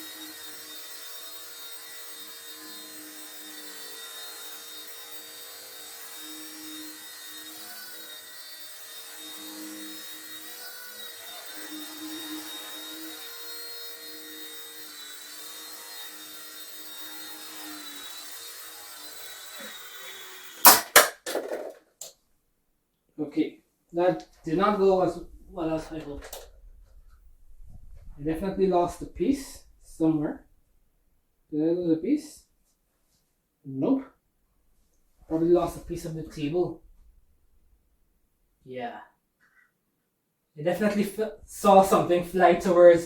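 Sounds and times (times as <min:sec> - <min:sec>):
toy helicopter rotor whine: 0:00.0 - 0:21.7
helicopter clattering on table: 0:20.7 - 0:21.8.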